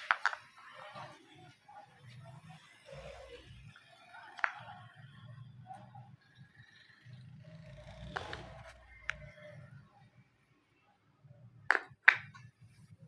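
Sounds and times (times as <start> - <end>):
wooden pieces clicking on board: 0.0 - 0.5, 4.4 - 4.6, 11.7 - 12.4.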